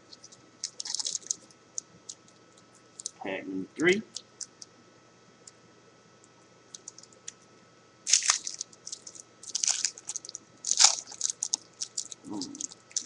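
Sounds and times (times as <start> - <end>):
card pack wrapper crinkling: 0.1 - 1.5, 3.0 - 3.2, 8.1 - 13.0.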